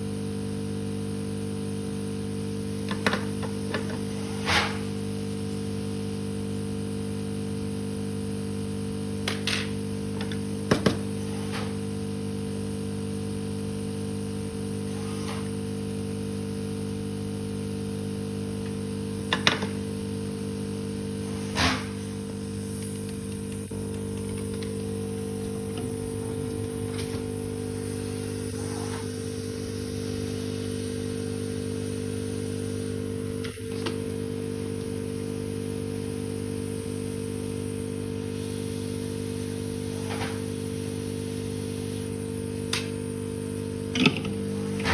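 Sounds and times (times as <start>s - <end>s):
electrical hum: 0.0s - 44.9s.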